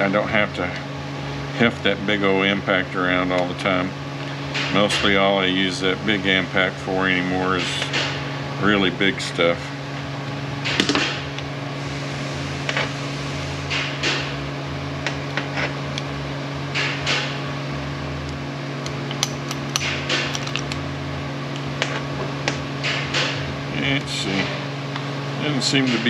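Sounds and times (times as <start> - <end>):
steady low hum: 0.0 - 26.0
metal parts clicking and tapping: 18.8 - 20.8.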